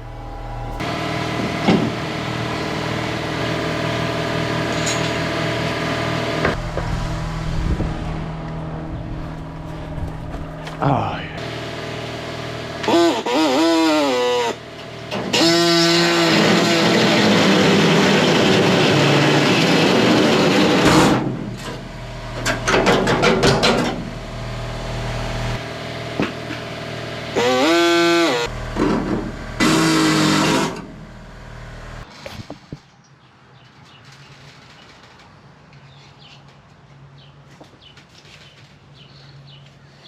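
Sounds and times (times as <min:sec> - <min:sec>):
power cutting tool cutting metal: 0:00.0 - 0:08.2, 0:11.4 - 0:32.3.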